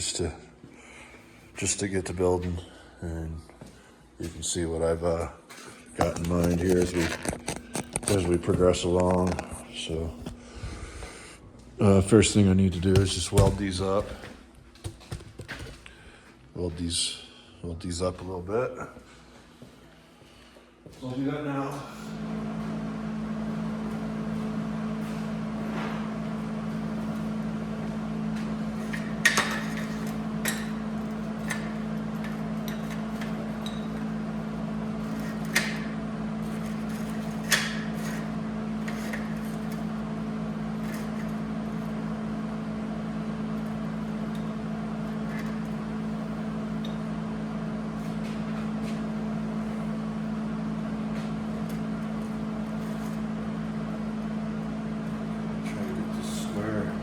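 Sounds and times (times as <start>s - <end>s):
welder buzzing hum: 21.8s - 57.0s.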